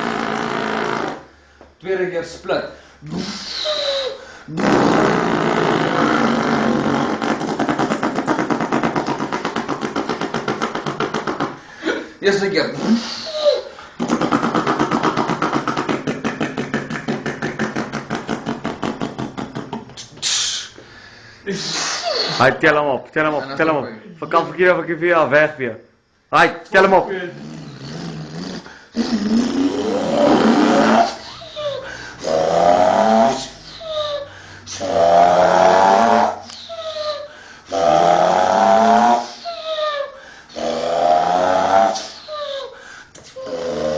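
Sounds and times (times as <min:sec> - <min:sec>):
person imitating truck engine: 0:03.0 - 0:20.7, 0:27.2 - 0:43.9.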